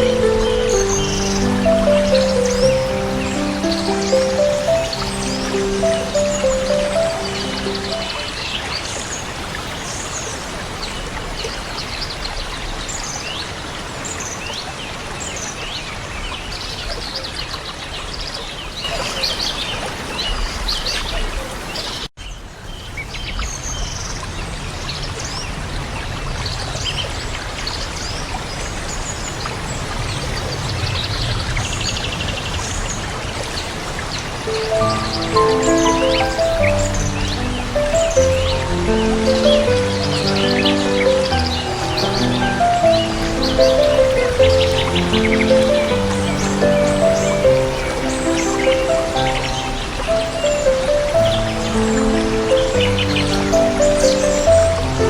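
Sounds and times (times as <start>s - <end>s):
small birds chirping: 0.0s - 9.3s, 34.1s - 55.0s
running water rushing: 0.0s - 16.1s, 28.4s - 55.0s.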